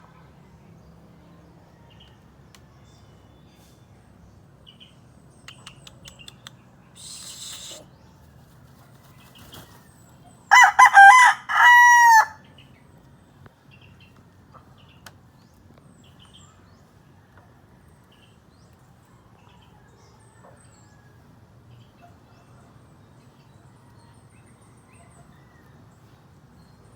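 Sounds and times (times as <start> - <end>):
rooster crowing: 10.5 - 12.4.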